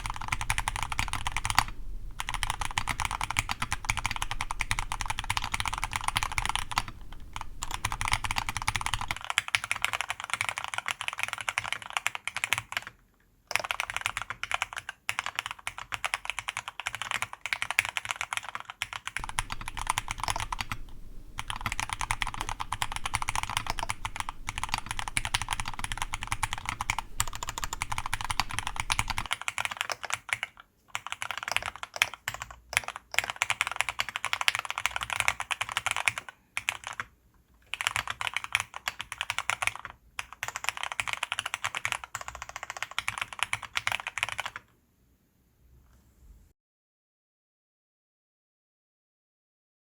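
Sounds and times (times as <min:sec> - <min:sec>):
mechanical keyboard typing clacks: 0:00.0 - 0:44.7.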